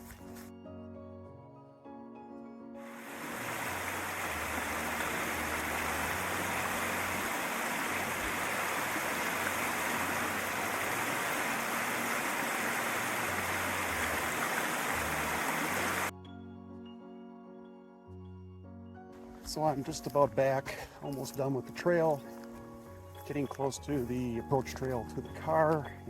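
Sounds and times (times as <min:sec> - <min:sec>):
river water rushing over rapids: 0:03.0 - 0:16.1.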